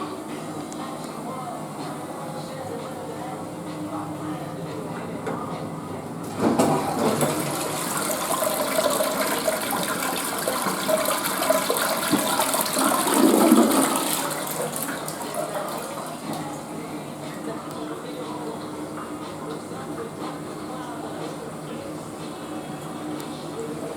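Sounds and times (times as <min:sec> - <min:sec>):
toilet flushing: 0:05.7 - 0:23.9.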